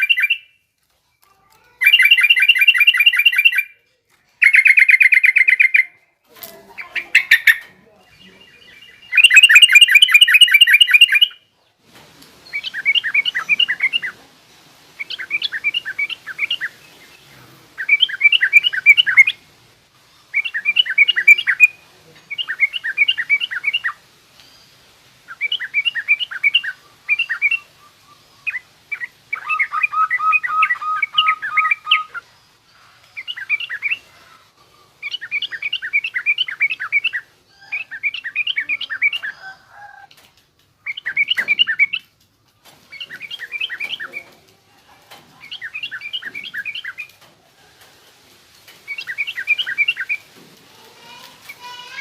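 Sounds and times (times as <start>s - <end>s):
bird chattering twitter: 0.0s - 0.5s, 1.8s - 3.8s, 4.4s - 5.9s, 6.8s - 11.4s, 17.8s - 19.4s, 20.3s - 24.0s, 25.3s - 32.3s.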